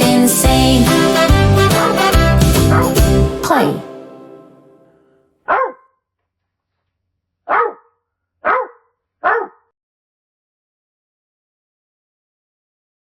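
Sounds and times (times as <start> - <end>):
dog barking: 2.7 - 3.0, 5.5 - 6.0, 7.5 - 9.7.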